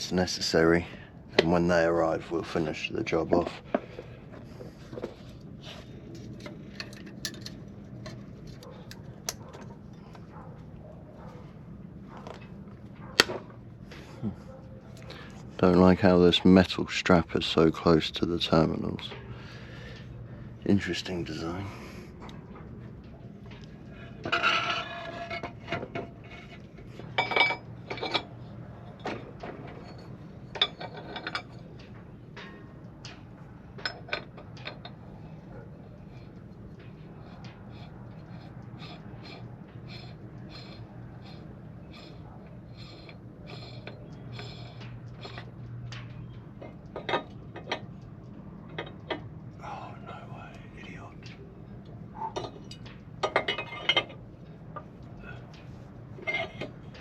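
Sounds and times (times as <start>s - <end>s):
metal tools clinking: 6.3s - 8.2s, 24.2s - 26.0s, 27.1s - 32.6s, 52.2s - 54.2s
tools clicking and tapping: 6.4s - 9.8s.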